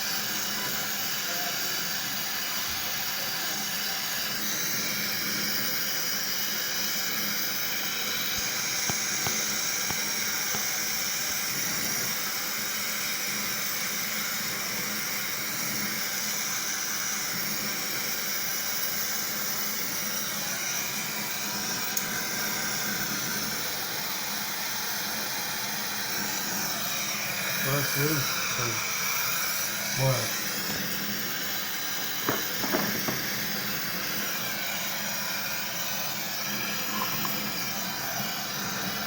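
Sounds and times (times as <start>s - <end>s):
gas hissing: 0.0s - 39.0s.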